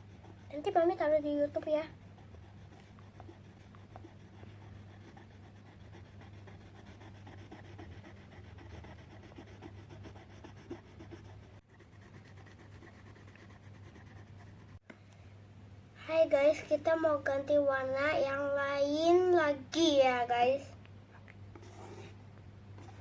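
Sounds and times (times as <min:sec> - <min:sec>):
pencil scratching on paper: 0:00.0 - 0:14.8, 0:21.6 - 0:22.2.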